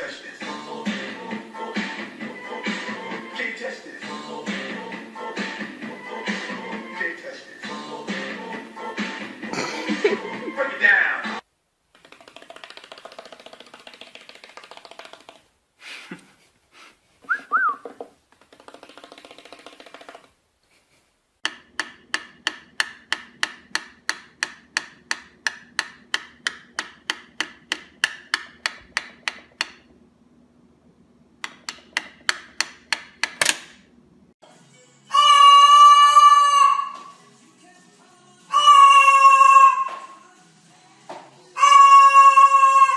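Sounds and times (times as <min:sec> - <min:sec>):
sharp evenly spaced taps: 0:12.0 - 0:15.4, 0:21.4 - 0:29.9, 0:31.4 - 0:33.4.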